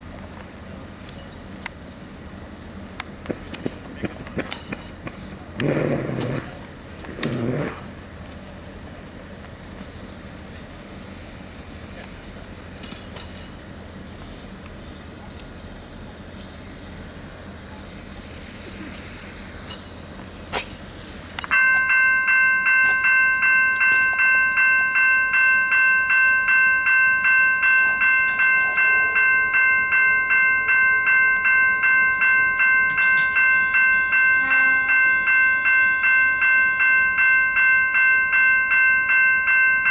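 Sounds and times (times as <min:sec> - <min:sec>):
level-crossing bell dinging: 0:21.4 - 0:39.9.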